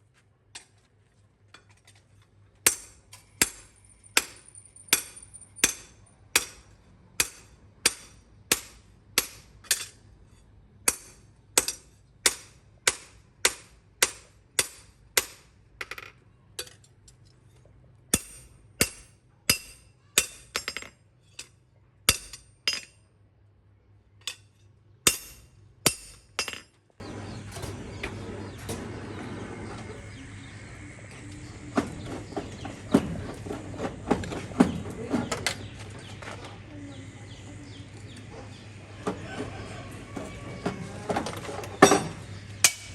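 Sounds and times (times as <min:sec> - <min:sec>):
hammer striking metal: 0:02.7 - 0:10.0, 0:10.8 - 0:15.5, 0:18.1 - 0:23.0, 0:24.2 - 0:26.7, 0:41.8 - 0:42.9
small clinks and knocks: 0:03.1 - 0:06.2.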